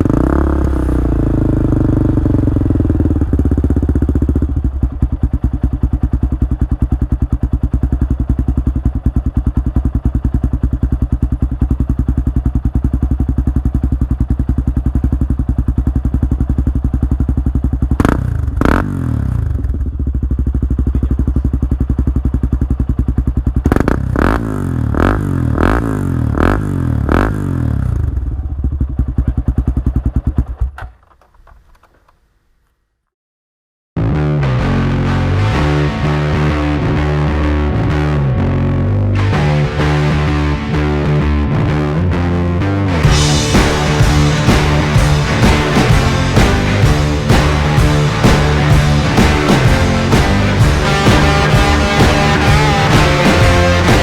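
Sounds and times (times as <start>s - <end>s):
quad engine idling: 0.0s - 31.0s, 35.1s - 54.0s
engine throttle blips: 34.1s - 54.0s.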